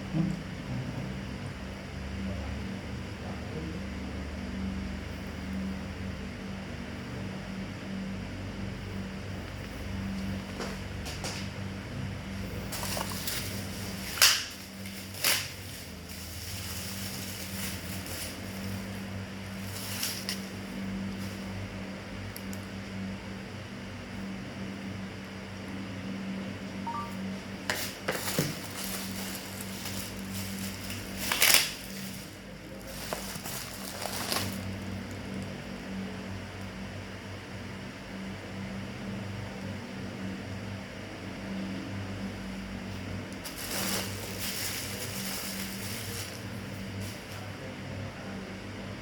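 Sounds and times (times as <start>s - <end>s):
steady low hum: 0.0s - 49.0s
packaging crinkling: 12.5s - 20.5s, 27.7s - 35.4s, 43.4s - 47.4s.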